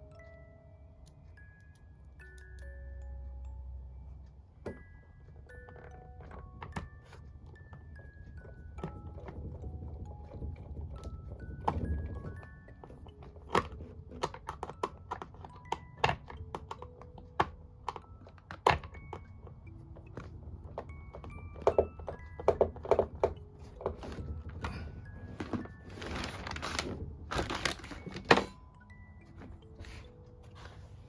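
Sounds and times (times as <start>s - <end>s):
background music held notes: 0.0s - 31.0s
small hard parts clattering: 5.5s - 30.1s.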